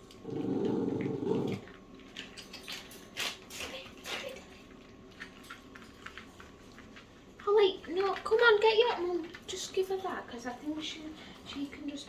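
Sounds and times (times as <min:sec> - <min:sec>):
dogs chewing: 0:00.0 - 0:12.0.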